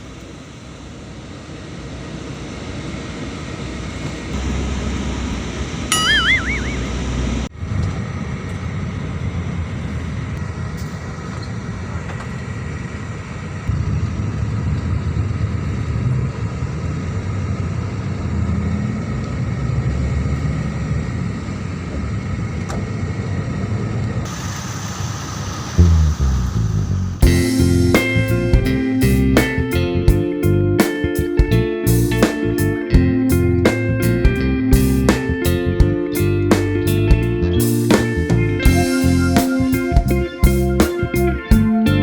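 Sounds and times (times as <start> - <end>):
bus engine rumble: 0.0 - 42.0
road noise: 0.0 - 42.0.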